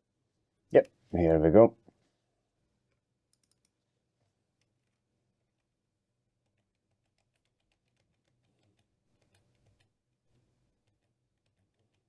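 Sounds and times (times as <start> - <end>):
faint rapid clicks: 2.9 - 3.8, 6.4 - 9.9.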